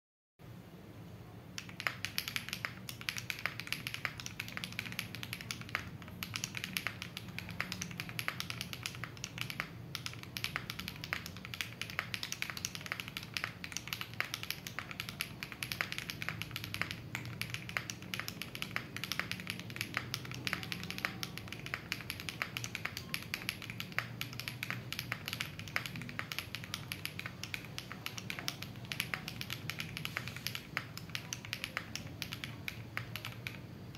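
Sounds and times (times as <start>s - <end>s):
fast typing on mechanical keyboard: 1.6s - 33.9s.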